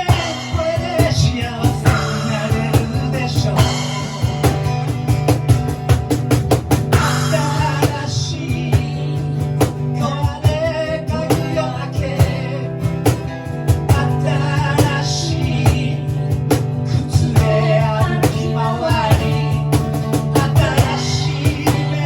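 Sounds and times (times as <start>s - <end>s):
guitar lines: 0.0s - 22.0s
steady drum beat: 0.0s - 22.0s.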